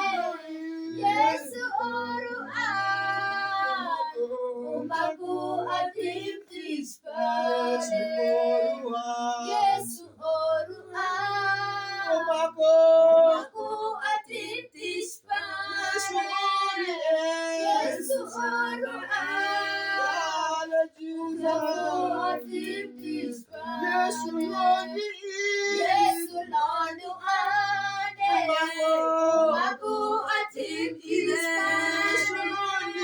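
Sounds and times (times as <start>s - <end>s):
high voices singing gospel chorus: 0.0s - 33.0s.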